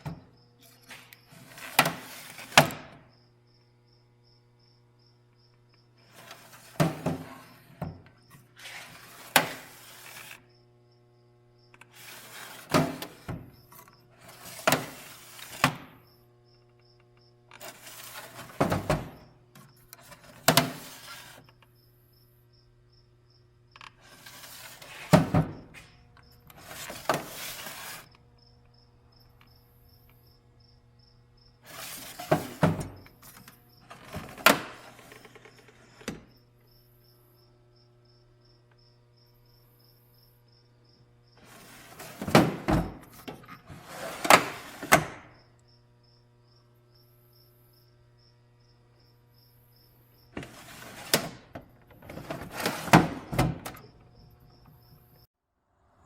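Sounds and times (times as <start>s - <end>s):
metal drawers scraping and clunking: 0.0s - 3.0s, 6.1s - 8.0s, 8.6s - 10.4s, 11.9s - 16.0s, 17.6s - 19.2s, 20.0s - 21.4s, 24.0s - 25.9s, 26.5s - 28.1s, 31.7s - 36.3s, 41.4s - 45.2s, 50.4s - 54.0s.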